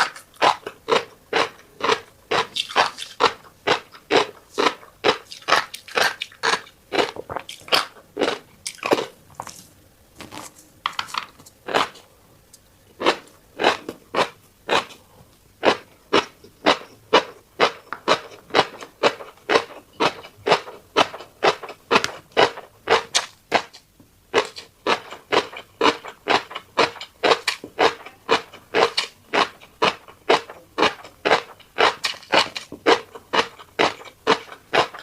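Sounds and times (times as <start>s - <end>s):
wet crunchy chewing: 0.0s - 12.0s, 24.4s - 35.0s.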